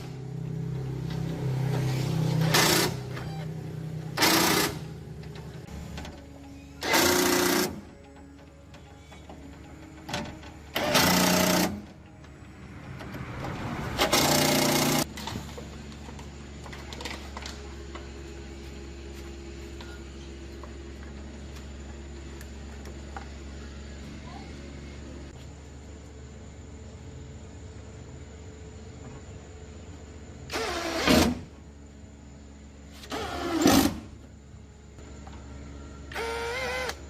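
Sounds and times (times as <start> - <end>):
steady low hum: 14.9 - 30.6.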